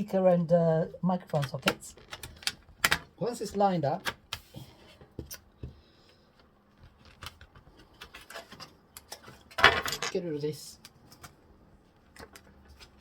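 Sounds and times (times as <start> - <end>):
plastic laptop parts clicking: 1.2 - 3.1, 6.8 - 9.2.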